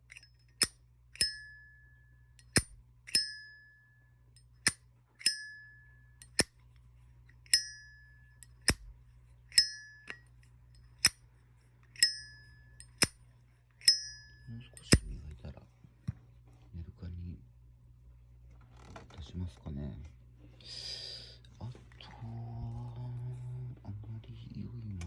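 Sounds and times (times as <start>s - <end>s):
metallic ring of lighter: 0.0s - 6.6s, 7.4s - 8.9s, 9.5s - 11.2s, 11.9s - 13.2s, 13.8s - 15.2s.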